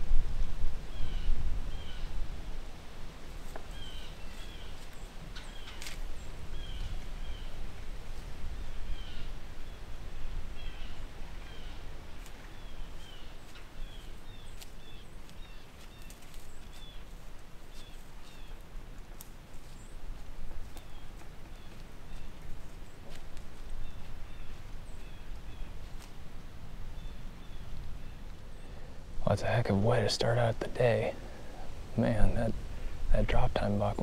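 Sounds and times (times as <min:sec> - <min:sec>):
small bird chirping: 0:03.6 - 0:07.6, 0:12.5 - 0:17.1, 0:17.7 - 0:18.6, 0:23.8 - 0:26.1.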